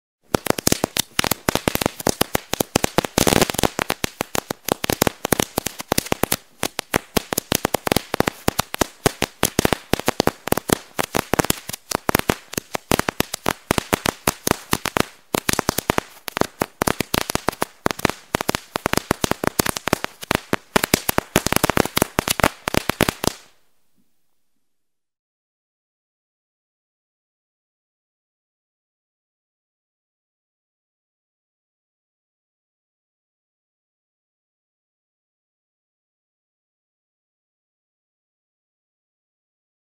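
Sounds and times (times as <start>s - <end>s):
firecrackers going off: 0.3s - 23.6s.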